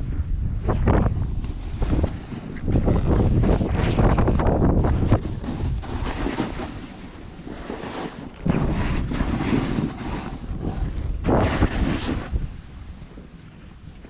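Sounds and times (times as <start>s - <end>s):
wind rushing over microphone: 0.0s - 14.0s
skis hissing over snow: 5.8s - 13.0s.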